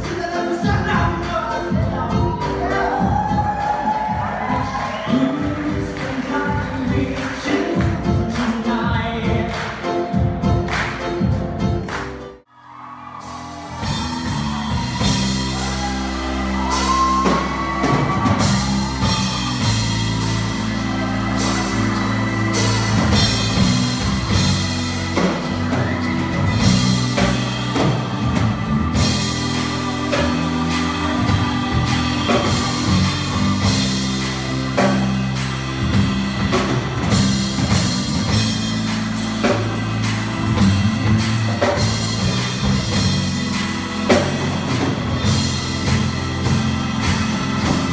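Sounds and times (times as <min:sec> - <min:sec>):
live band playing: 0:00.0 - 0:12.4, 0:13.0 - 0:47.9.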